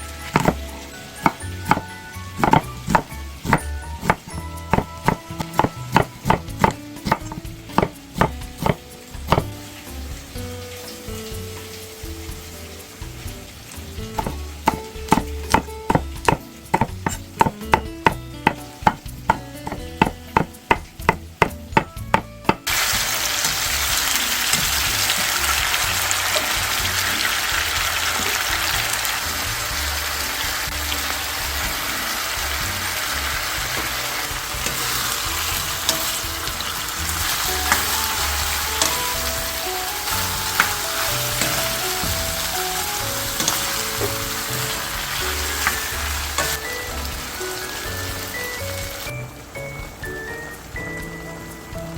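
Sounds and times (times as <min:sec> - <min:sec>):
food sizzling in a pan: 0:00.0 - 0:51.9
knife chopping on cutting board: 0:00.4 - 0:00.6, 0:01.2 - 0:09.6, 0:14.2 - 0:22.7.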